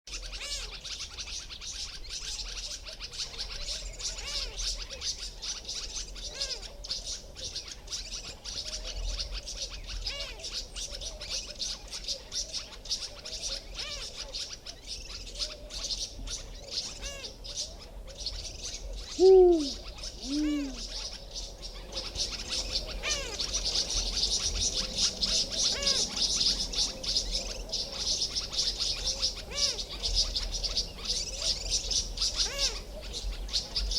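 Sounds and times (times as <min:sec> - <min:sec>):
birds scolding: 0:00.1 - 0:33.9
owl two-note hoot: 0:19.2 - 0:20.8.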